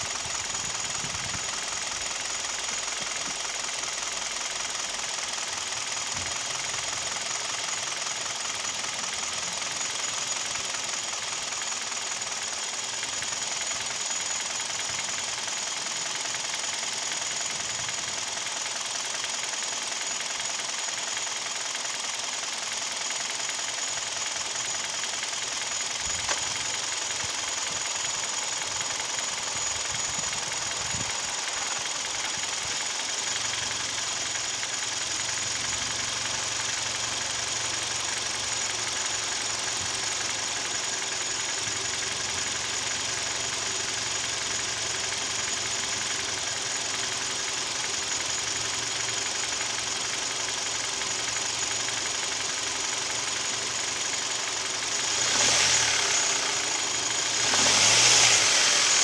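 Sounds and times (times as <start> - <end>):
engine running with a knock: 26.0 - 26.9.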